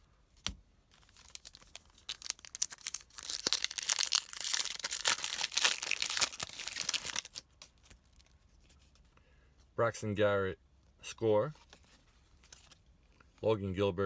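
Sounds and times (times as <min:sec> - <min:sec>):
foil wrapper crinkling and tearing: 0:01.0 - 0:08.3.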